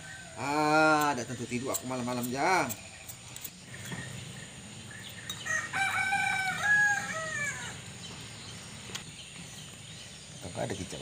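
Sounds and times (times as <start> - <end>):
rooster crowing: 5.4 - 7.8.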